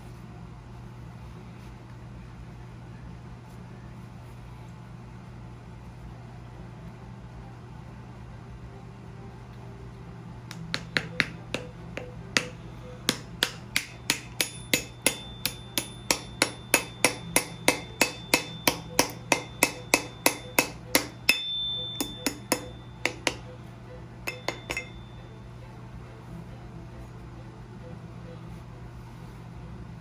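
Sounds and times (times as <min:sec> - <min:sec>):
hammer striking metal: 0:10.5 - 0:23.6, 0:24.2 - 0:25.2.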